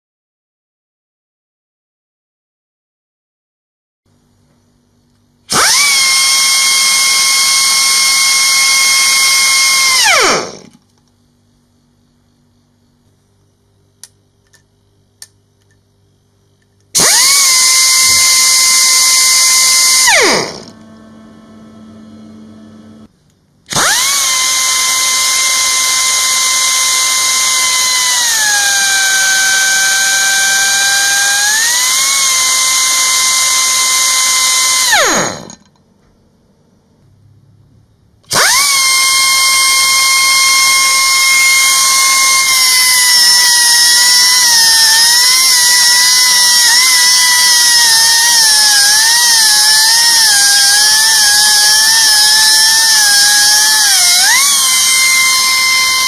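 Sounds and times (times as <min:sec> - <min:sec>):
pneumatic grinder whine: 0:05.5 - 0:10.8, 0:16.9 - 0:23.1, 0:23.7 - 0:35.8, 0:38.2 - 0:56.0
sharp clicks: 0:14.0 - 0:15.8.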